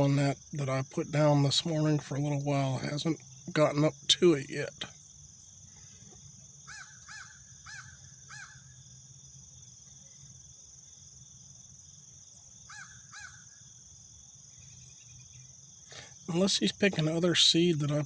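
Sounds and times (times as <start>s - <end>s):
crickets droning: 0.0s - 18.0s
crow cawing: 6.7s - 8.6s, 12.7s - 13.4s.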